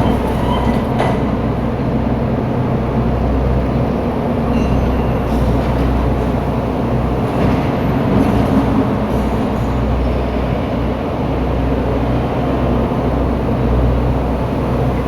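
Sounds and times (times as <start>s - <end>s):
diesel engine rumbling: 0.0s - 15.0s.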